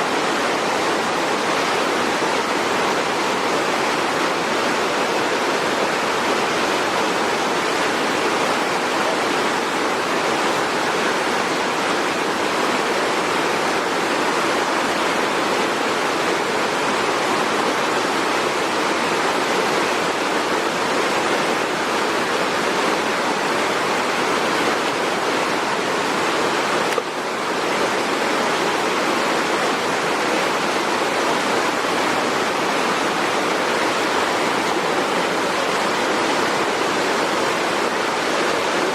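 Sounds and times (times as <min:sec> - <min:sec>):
rushing falling water: 0:00.0 - 0:38.9.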